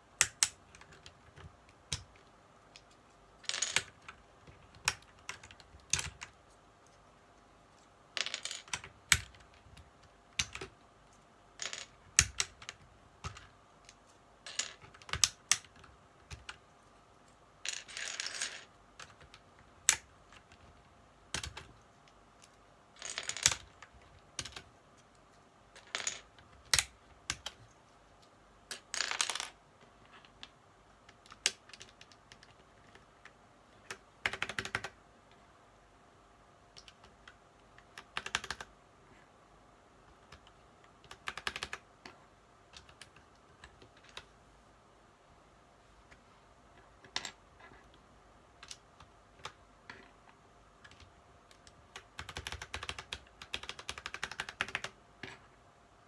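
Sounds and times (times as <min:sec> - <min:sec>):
mechanical keyboard keys clicking: 0:00.2 - 0:02.2, 0:08.6 - 0:10.7, 0:14.8 - 0:16.6, 0:21.3 - 0:21.8, 0:24.4 - 0:24.7, 0:33.9 - 0:35.0, 0:36.8 - 0:38.7, 0:40.2 - 0:41.8, 0:42.7 - 0:44.3, 0:50.8 - 0:55.0.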